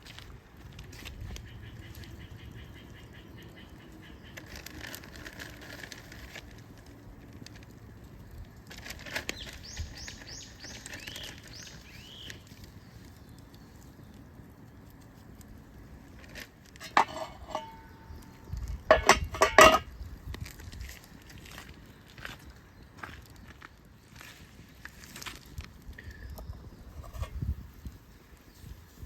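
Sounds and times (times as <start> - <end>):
songbird calling: 1.3 - 4.8, 9.2 - 14.1, 16.8 - 20.1.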